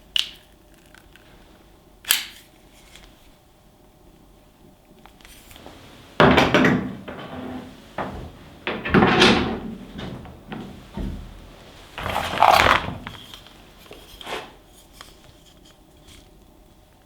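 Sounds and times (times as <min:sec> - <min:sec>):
sharp knocks: 0:05.6 - 0:13.3
packaging scraping and rustling: 0:09.7 - 0:16.3.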